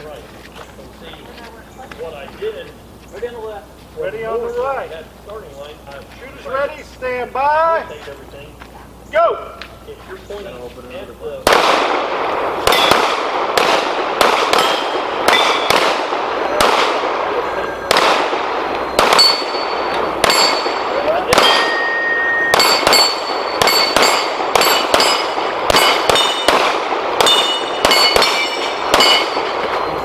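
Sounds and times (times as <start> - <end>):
pistol shots echoing: 11.4 - 30.0
steel plates clanging: 19.2 - 26.5, 27.2 - 30.0.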